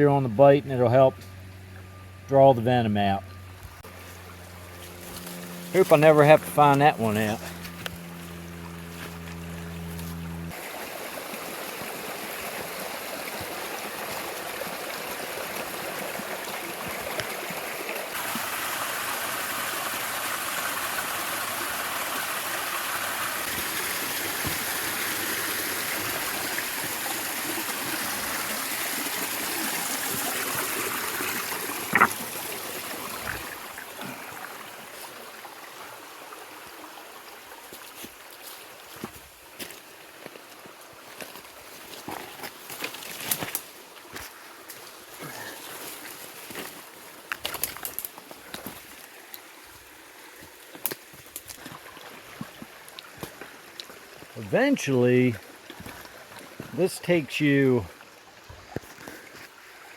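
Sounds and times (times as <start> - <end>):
low hum: 0.2 - 10.6
creek rushing over rocks: 10.5 - 59.9.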